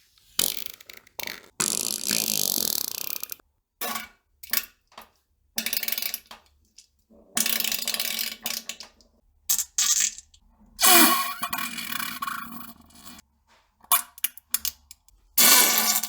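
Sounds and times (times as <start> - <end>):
farts: 0.4 - 3.4.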